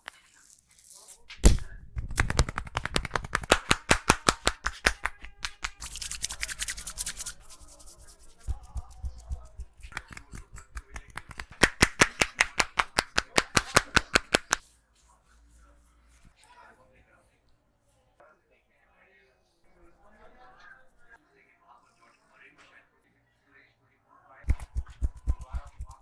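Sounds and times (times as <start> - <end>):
hand slaps on head: 1.4 - 6.1, 9.1 - 14.6, 24.5 - 26.0.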